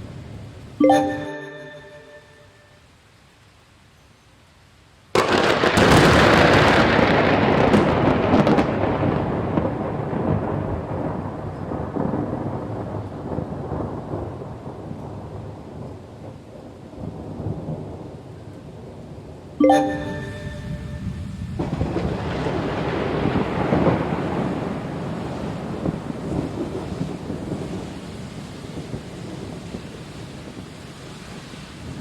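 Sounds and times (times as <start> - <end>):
thunder crack and rumble: 5.2 - 19.3, 21.4 - 30.8.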